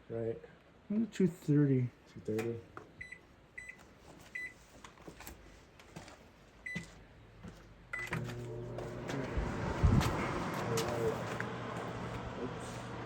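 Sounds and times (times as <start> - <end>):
microwave keypad beeps: 3.0 - 3.8, 8.0 - 8.2
microwave humming: 8.0 - 13.0.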